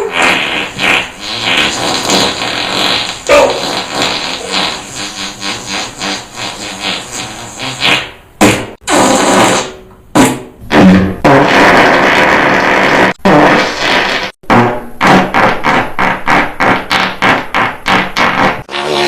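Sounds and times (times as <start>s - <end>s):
fart sounds: 0.0s - 19.0s.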